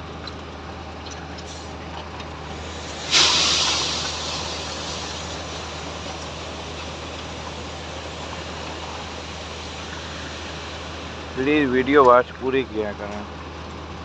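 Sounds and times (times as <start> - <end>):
construction machinery engines running: 0.0 - 14.0
loud hiss: 2.5 - 12.8.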